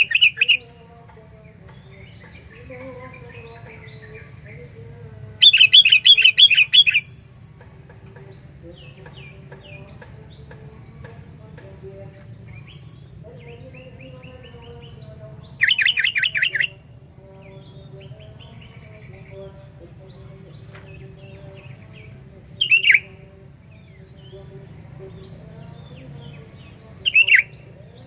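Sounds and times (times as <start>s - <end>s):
bulbul calling rapid notes: 0.0s - 0.8s, 5.4s - 7.2s, 14.8s - 16.8s, 22.0s - 23.3s, 25.9s - 27.8s.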